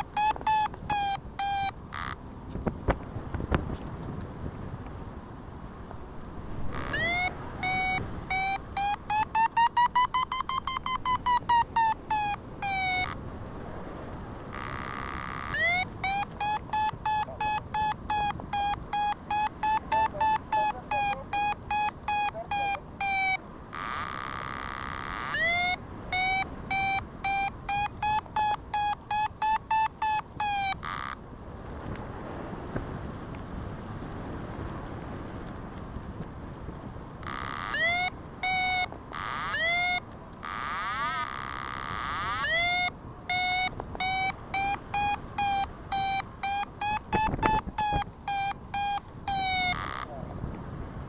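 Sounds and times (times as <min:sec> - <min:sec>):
variometer beeping: 0:00.0 - 0:02.2, 0:06.7 - 0:13.2, 0:14.5 - 0:31.2, 0:37.2 - 0:50.1
faint buzzing tone: 0:00.0 - 0:02.6, 0:05.8 - 0:31.2, 0:37.2 - 0:50.1.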